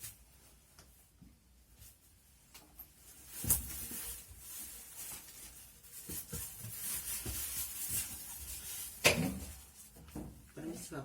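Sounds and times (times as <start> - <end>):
rustling: 0.0 - 11.0.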